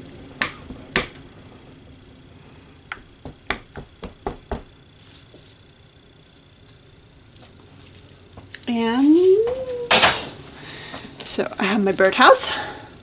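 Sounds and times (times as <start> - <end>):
tool tapping soap mold: 0.4 - 1.2, 2.9 - 4.7.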